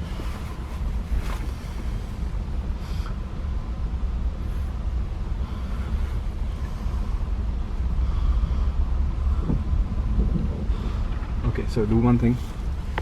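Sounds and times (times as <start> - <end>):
car engine rumbling inside cabin: 0.0 - 13.0.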